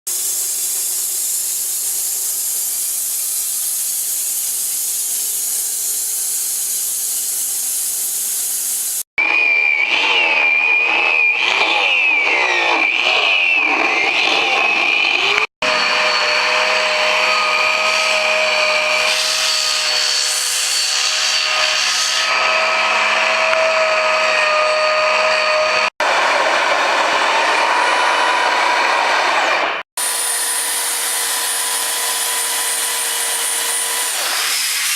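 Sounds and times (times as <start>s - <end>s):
power tool motor whining: 8.8s - 34.9s
rough grinding noise: 9.3s - 34.9s.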